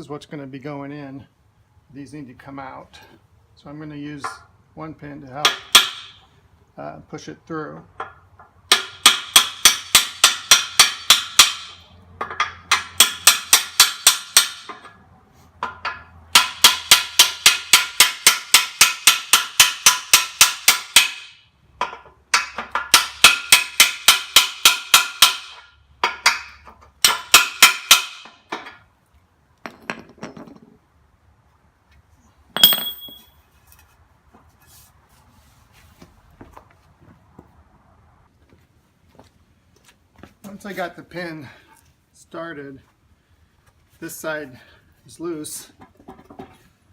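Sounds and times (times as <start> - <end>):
hammer striking metal pin: 8.0 - 15.0, 15.6 - 28.8, 32.6 - 33.4.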